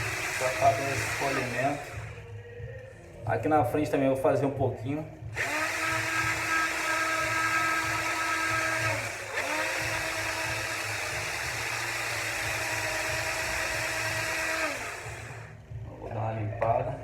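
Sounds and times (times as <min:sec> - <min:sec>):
drill motor whining: 0:00.0 - 0:02.2, 0:05.3 - 0:15.6.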